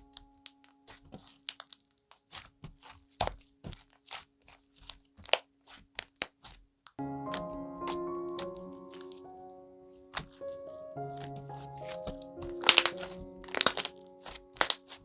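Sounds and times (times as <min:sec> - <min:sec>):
soft background music: 0:07.0 - 0:15.0
slime crackling pops: 0:11.8 - 0:15.0.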